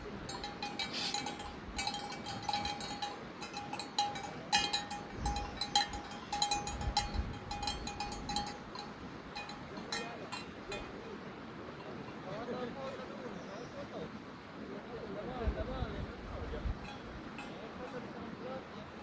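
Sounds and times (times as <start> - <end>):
light metallic clinking: 0.0 - 13.0, 16.8 - 18.1.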